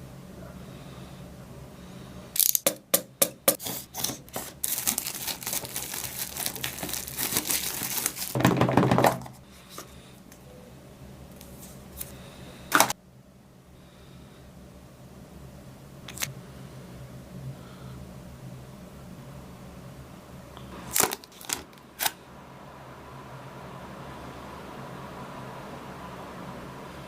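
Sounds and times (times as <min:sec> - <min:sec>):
plastic wrapping crinkling and tearing: 0:03.6 - 0:08.8, 0:20.8 - 0:22.2.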